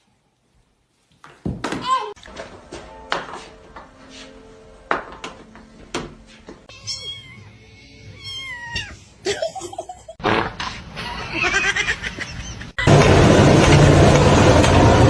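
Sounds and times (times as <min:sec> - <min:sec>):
cat meowing: 0:06.7 - 0:09.1.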